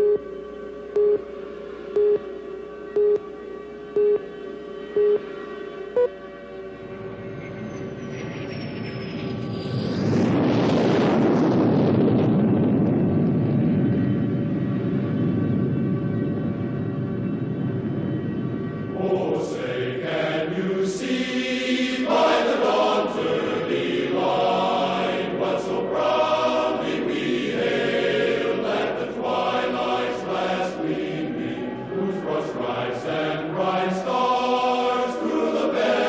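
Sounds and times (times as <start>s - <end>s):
choir singing held chords: 16.3s - 36.0s.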